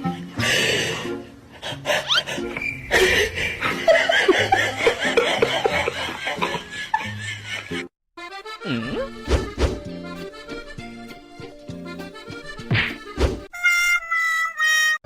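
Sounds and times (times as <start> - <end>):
background music: 0.0 - 15.0
people laughing: 2.0 - 7.9.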